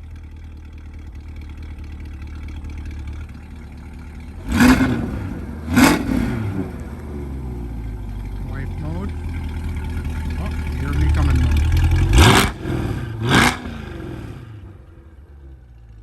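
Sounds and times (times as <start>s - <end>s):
car engine idling and revving: 0.0s - 16.0s.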